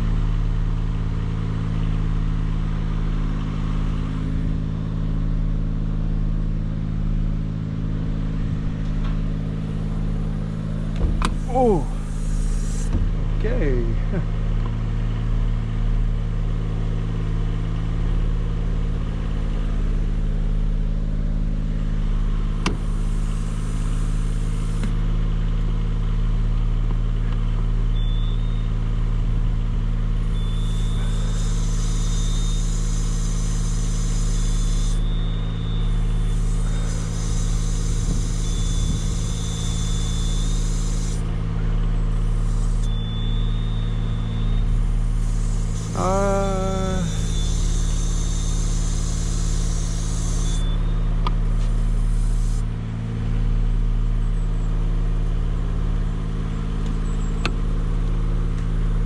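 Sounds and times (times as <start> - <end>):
engine idling: 0.0 - 59.0
faint high beeps: 28.0 - 28.7, 35.0 - 36.1, 42.9 - 44.7.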